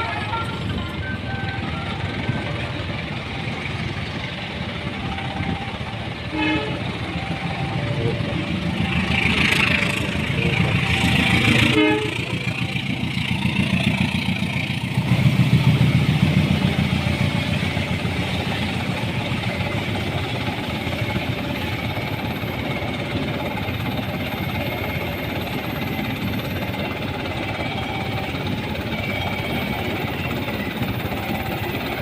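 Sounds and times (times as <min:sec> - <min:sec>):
multi-tone bus horn: 0:00.0 - 0:13.0
diesel engine rumble: 0:00.0 - 0:32.0.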